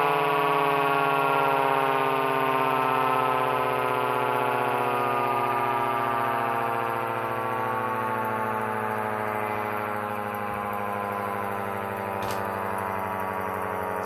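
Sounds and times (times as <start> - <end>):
electro-mechanical siren winding down: 0.4 - 5.4.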